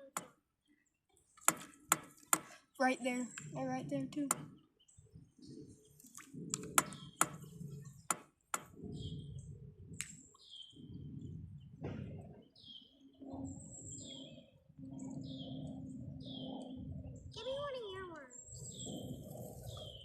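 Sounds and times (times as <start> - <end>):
small bird chirping: 0.0 - 8.2, 8.8 - 20.0
steady low rumble: 8.7 - 20.0.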